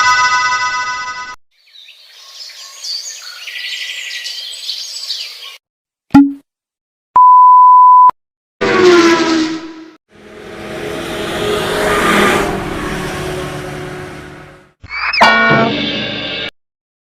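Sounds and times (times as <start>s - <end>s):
censor bleep: 6.2s - 6.4s, 7.2s - 8.2s.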